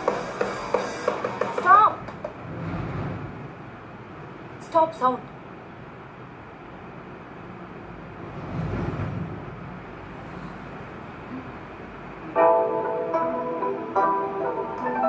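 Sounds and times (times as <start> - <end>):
low background noise: 0.0 - 15.0
music with held notes: 12.3 - 15.0.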